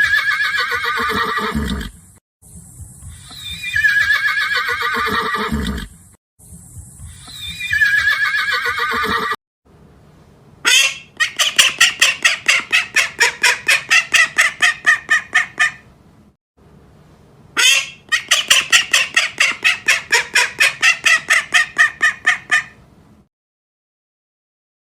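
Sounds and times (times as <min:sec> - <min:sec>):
horse whinnying: 0:00.0 - 0:02.0, 0:03.3 - 0:06.0, 0:07.3 - 0:09.4
farm bird squawking: 0:03.2 - 0:06.0, 0:07.2 - 0:09.4, 0:10.6 - 0:15.9, 0:17.6 - 0:22.8.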